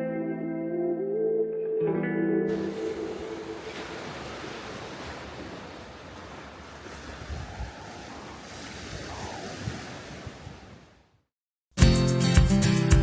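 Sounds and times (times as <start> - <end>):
wind buffeting microphone: 2.5 - 11.1
sea waves washing in: 2.5 - 11.2.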